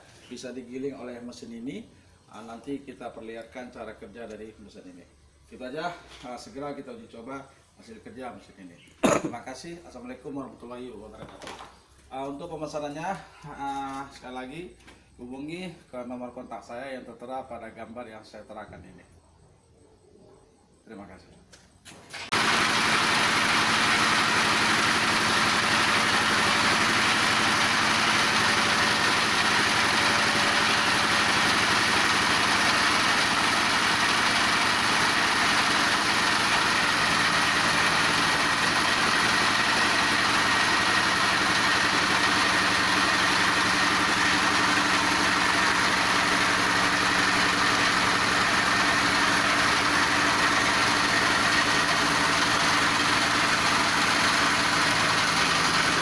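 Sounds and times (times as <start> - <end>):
grinding machine running: 22.2 - 56.0.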